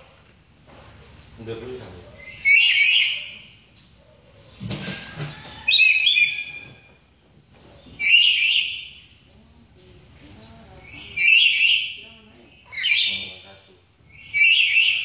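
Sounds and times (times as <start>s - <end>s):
bird calling loudly: 1.8s - 4.2s, 5.6s - 6.8s, 7.8s - 9.3s, 10.8s - 15.0s.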